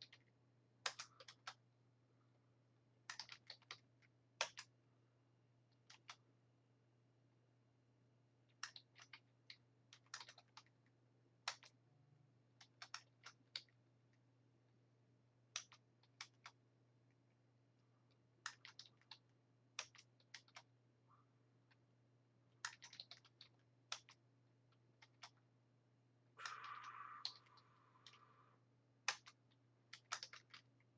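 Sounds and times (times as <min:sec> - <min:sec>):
keyboard typing and clicking: 0:00.0 - 0:01.6, 0:03.0 - 0:04.8, 0:05.7 - 0:06.3, 0:08.5 - 0:11.8, 0:12.5 - 0:13.8, 0:15.5 - 0:16.6, 0:18.1 - 0:20.7, 0:22.5 - 0:25.4, 0:26.4 - 0:28.4, 0:29.0 - 0:30.9
low steady hum: 0:00.0 - 0:30.9.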